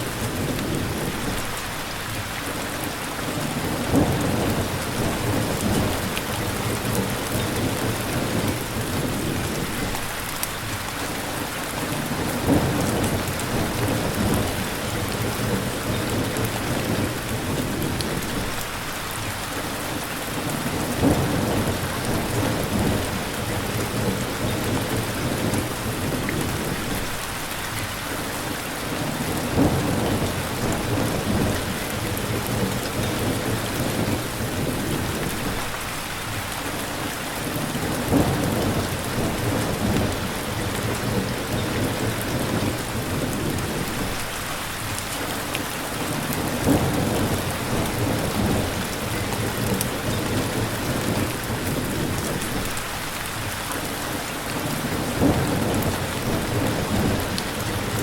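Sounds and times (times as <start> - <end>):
heavy rain hissing: 0.0 - 58.0
thunder rumbling: 3.4 - 10.2, 12.0 - 18.8, 20.4 - 27.6, 28.9 - 35.8, 37.5 - 45.0, 46.1 - 53.4, 54.6 - 58.0.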